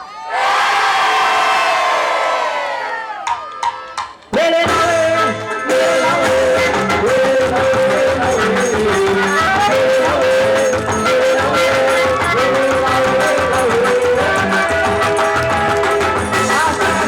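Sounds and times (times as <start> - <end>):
instrumental folk dance music: 3.4 - 17.0.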